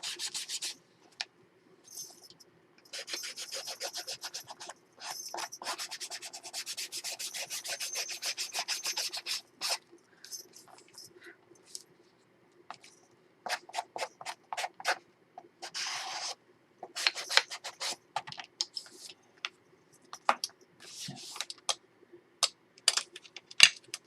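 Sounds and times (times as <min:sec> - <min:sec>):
rubbing and scraping on paper edges: 0:02.9 - 0:09.8, 0:15.6 - 0:16.4.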